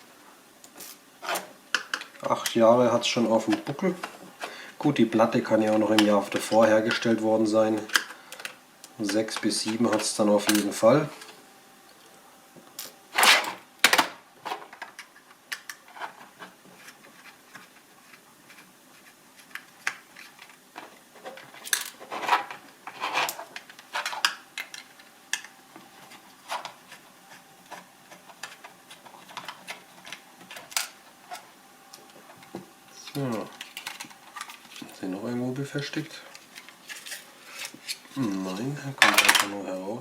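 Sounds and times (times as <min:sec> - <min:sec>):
hard drive scraping: 0:15.9 - 0:38.8.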